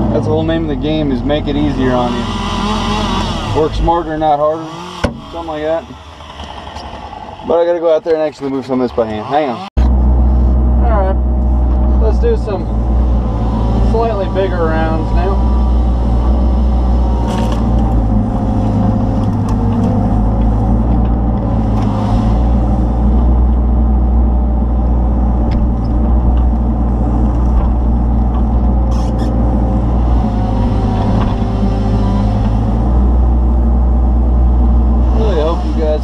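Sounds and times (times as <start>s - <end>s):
excavator diesel engine under load: 9.8s - 36.0s.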